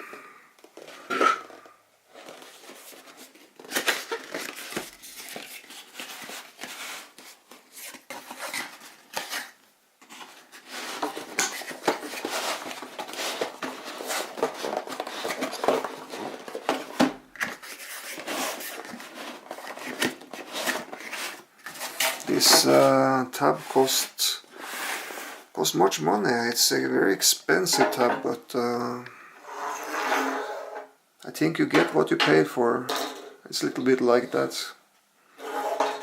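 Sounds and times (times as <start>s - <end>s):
packaging being handled and opened: 0.0s - 25.4s.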